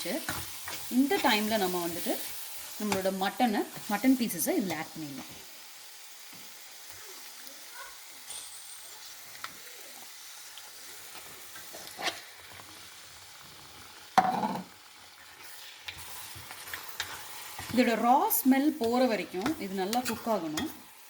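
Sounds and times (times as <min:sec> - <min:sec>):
meat sizzling in a pan: 0:00.0 - 0:21.0
spoon stirring and scraping: 0:00.2 - 0:03.0, 0:11.1 - 0:12.8, 0:15.3 - 0:21.0.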